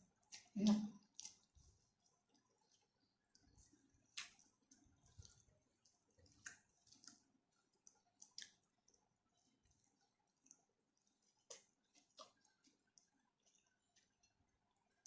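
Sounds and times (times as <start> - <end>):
wet mouth clicks chewing food: 0.1 - 15.0.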